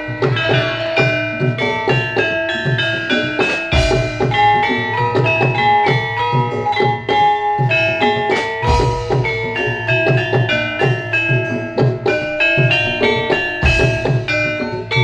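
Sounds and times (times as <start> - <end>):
gamelan metal keys and gongs: 0.0 - 15.0
hand drum strokes: 0.0 - 15.0.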